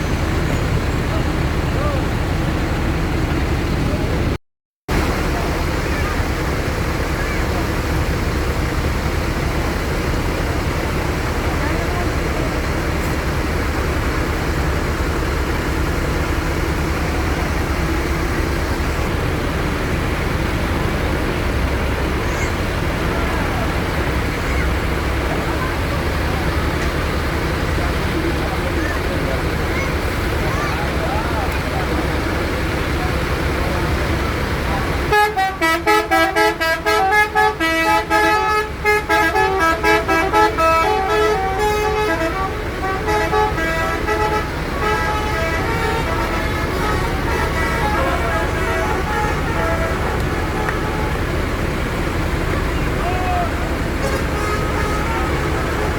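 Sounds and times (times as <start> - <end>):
bus engine rumble: 0.0 - 55.9
road noise: 0.0 - 55.9
bus musical horn tune: 35.0 - 55.9.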